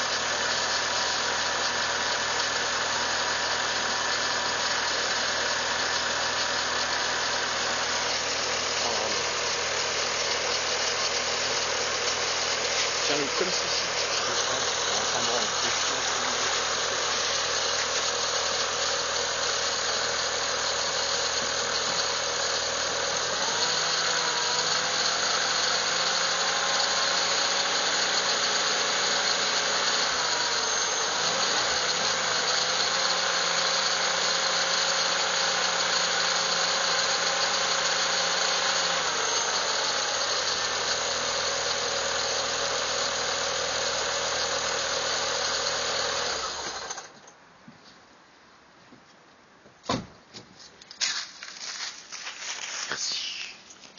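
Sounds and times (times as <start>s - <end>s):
car engine idling: 0.0s - 47.2s.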